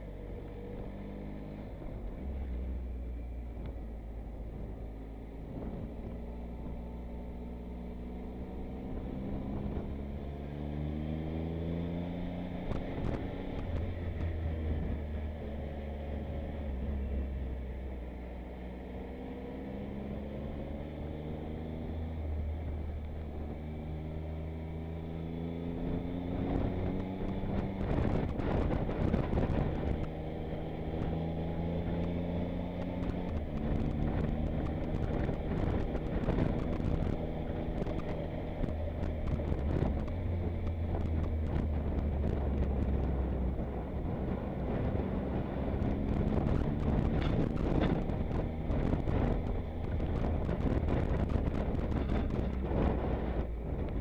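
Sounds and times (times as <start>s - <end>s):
low wind rush: 0.0s - 54.0s
motorcycle engine revving: 19.0s - 54.0s.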